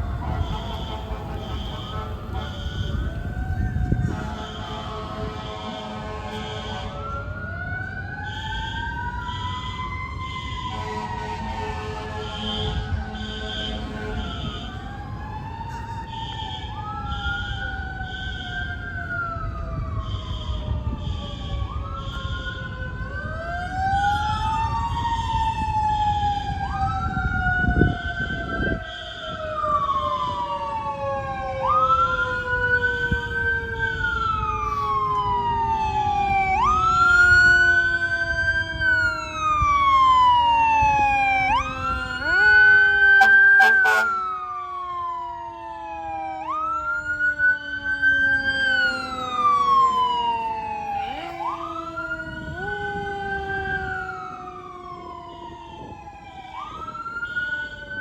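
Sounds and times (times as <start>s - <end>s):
low diesel engine rumble: 0.0s - 5.5s
deep siren tone winding down: 0.0s - 58.0s
fire engine siren rising and falling: 0.0s - 58.0s.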